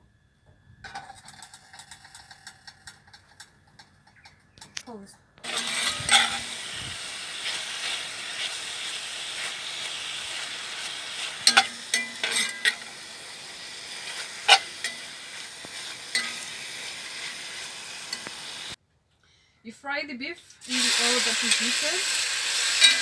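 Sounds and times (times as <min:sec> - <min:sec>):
utensil clicking against wok: 0:00.9 - 0:04.8, 0:05.4 - 0:18.8, 0:20.6 - 0:23.0
meat sizzling in hot oil: 0:05.4 - 0:18.8, 0:20.6 - 0:23.0.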